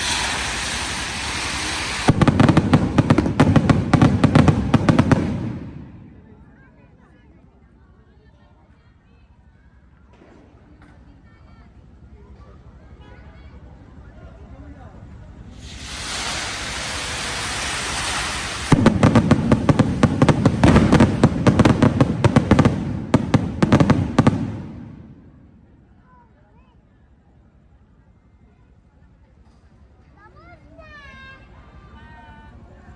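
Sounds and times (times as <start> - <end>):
firework hiss: 0.0 - 6.3, 15.4 - 25.7
fireworks sharp bangs: 0.0 - 6.7, 15.6 - 26.0.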